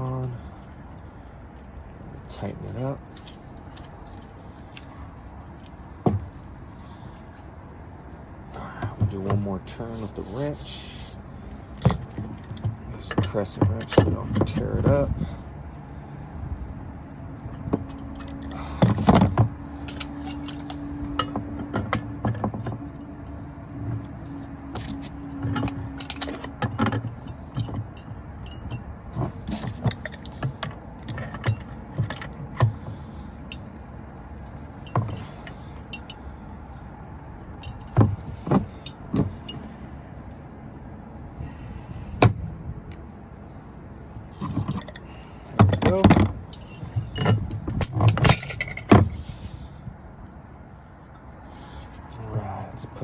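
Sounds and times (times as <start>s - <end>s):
wrench clinking on metal fittings: 19.8s - 21.4s, 44.6s - 48.9s.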